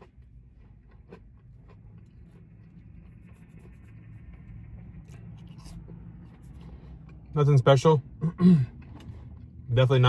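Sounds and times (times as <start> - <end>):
chewing crispy fries: 0.0 - 7.3.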